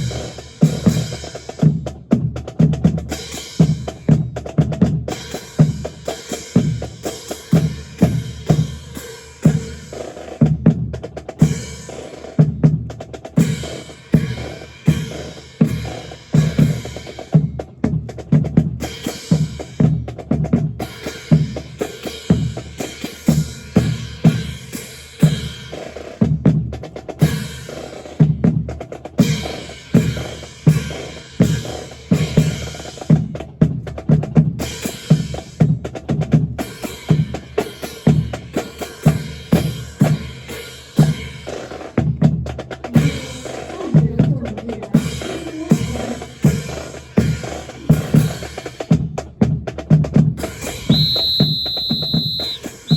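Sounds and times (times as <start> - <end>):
snare drum patterns and rolls: 0.0 - 52.9
bass drum strikes: 50.3 - 52.5.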